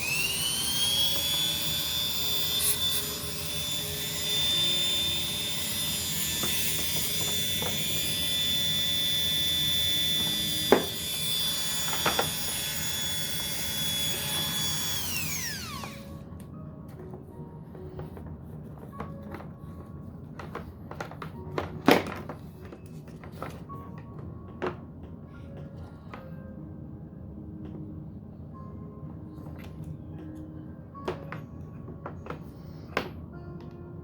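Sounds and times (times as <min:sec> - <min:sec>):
rotary tool high-pitched whine: 0:00.0 - 0:16.2.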